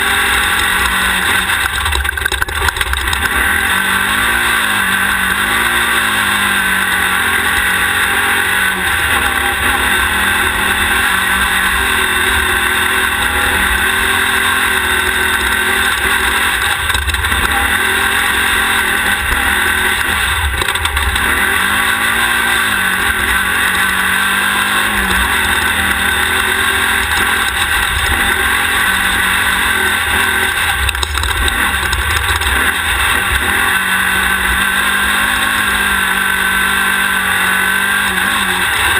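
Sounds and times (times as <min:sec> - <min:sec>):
loud steady rushing noise: 0:00.0 - 0:38.9
race car engine revving: 0:00.0 - 0:38.9.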